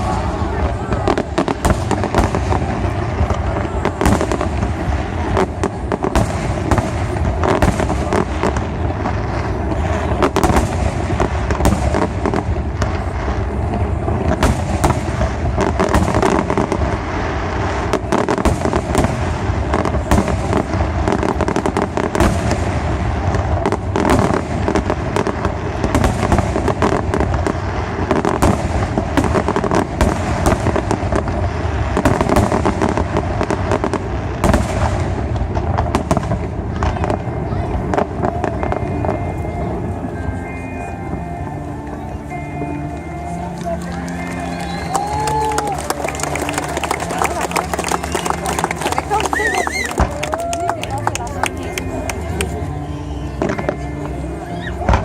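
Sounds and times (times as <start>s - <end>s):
fireworks bursts and crackling: 0.0s - 55.0s.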